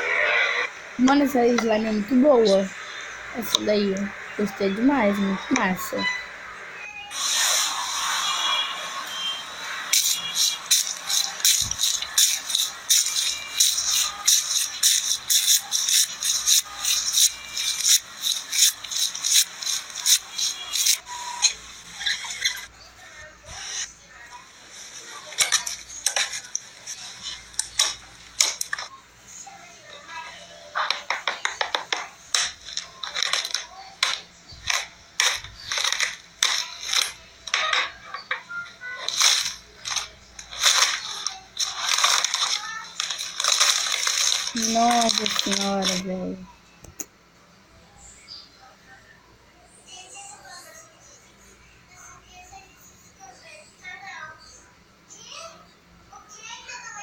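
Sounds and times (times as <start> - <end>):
slime clicking and crackling: 39.1 - 46.0.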